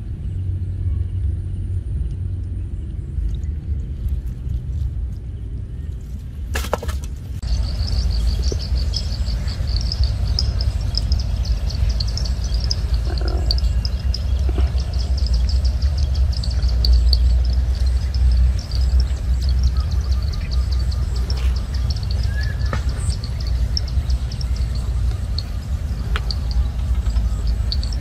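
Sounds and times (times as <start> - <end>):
steady low rumble: 0.0 - 28.0
fast high chirps: 7.4 - 28.0.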